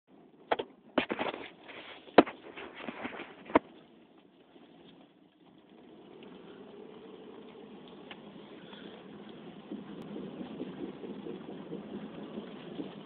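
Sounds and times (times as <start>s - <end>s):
faint steady low sound: 3.4s - 13.0s.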